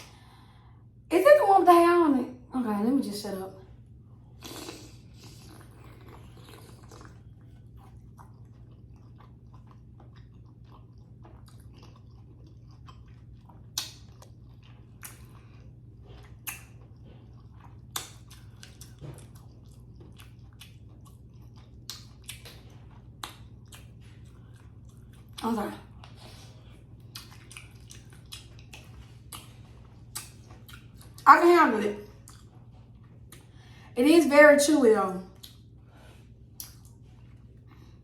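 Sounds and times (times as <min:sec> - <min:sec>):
faint low hum: 0:00.0 - 0:38.0
wet chewing mouth smacks: 0:04.4 - 0:25.4, 0:26.0 - 0:31.2, 0:32.2 - 0:33.5, 0:35.4 - 0:35.7, 0:36.6 - 0:37.4.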